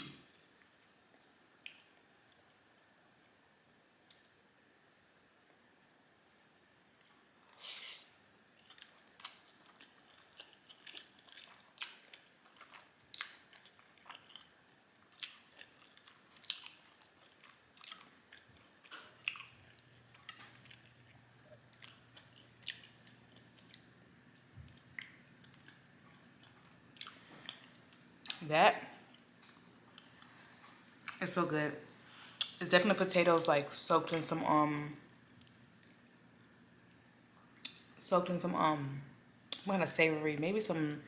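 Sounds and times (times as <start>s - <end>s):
mouth chewing noodles: 7.0s - 28.4s.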